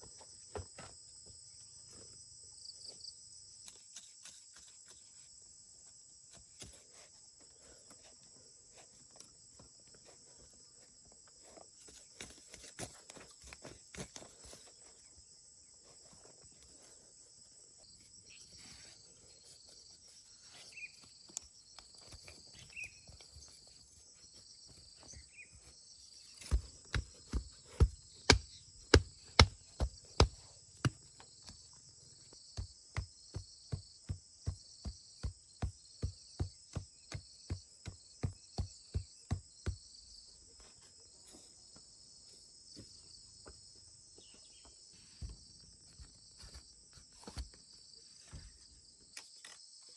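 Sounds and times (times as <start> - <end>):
insect chorus: 0.0 - 49.9.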